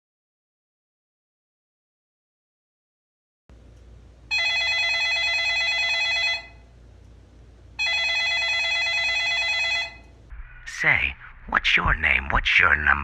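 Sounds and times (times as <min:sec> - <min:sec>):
telephone ringing: 0:04.3 - 0:06.7, 0:07.8 - 0:10.1.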